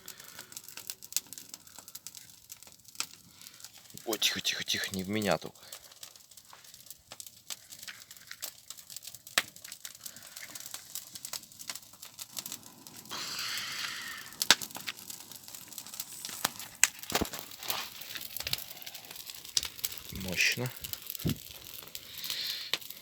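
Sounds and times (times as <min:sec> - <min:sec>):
paper bonfire crackling: 0:00.0 - 0:23.0
hissing rush: 0:12.4 - 0:20.8.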